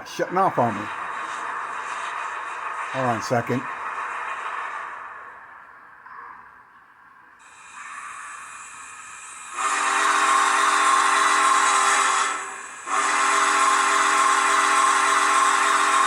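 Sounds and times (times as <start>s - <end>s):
steam hiss: 0.0s - 6.1s, 7.4s - 16.0s
steam whistle blast: 7.5s - 16.0s.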